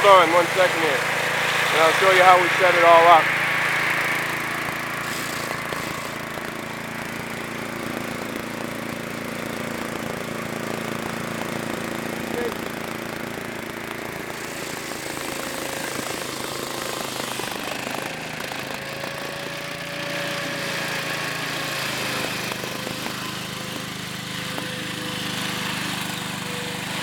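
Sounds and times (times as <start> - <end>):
ice chips spraying hiss: 0.0 - 8.6, 14.1 - 25.4
ice saw engine running: 0.0 - 27.0.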